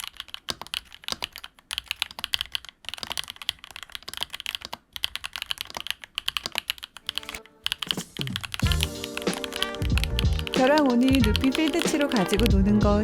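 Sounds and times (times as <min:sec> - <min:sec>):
mechanical keyboard typing: 0:00.0 - 0:12.5
music: 0:07.2 - 0:13.0.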